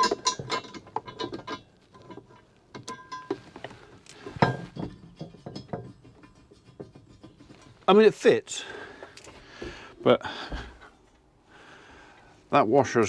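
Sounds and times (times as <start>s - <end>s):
metal hardware clinking: 0.0s - 7.9s.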